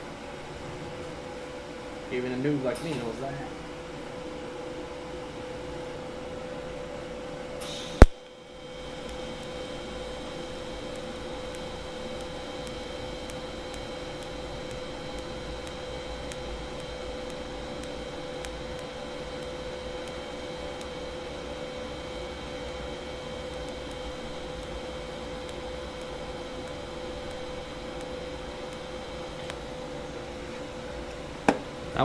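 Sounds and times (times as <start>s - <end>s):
welding arc hum and whine: 0.0s - 32.0s
welder hiss: 7.6s - 8.1s
welding arc crack: 7.6s - 32.0s.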